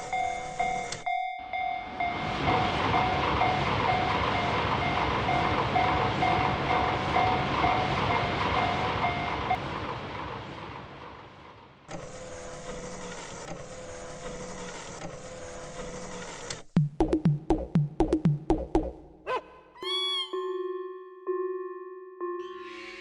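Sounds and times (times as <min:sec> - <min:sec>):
level-crossing warning bell ringing: 0:00.0 - 0:09.6, 0:19.8 - 0:23.0
passing train rumble: 0:00.0 - 0:12.8.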